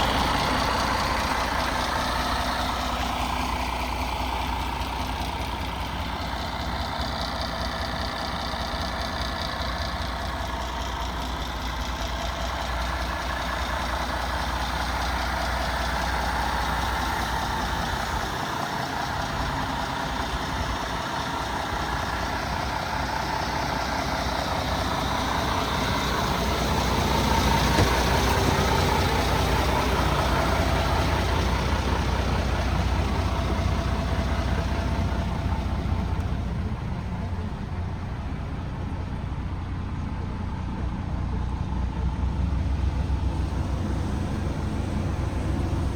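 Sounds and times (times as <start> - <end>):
diesel truck engine running: 0.0 - 45.9.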